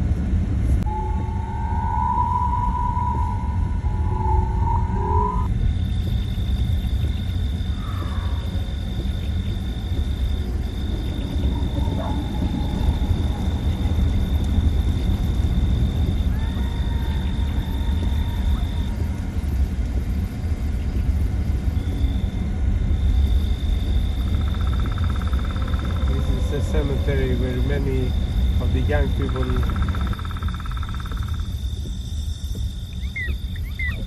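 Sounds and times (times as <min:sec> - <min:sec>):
faint high tone: 0:00.8 - 0:05.5
road and tyre rumble: 0:02.9 - 0:33.8.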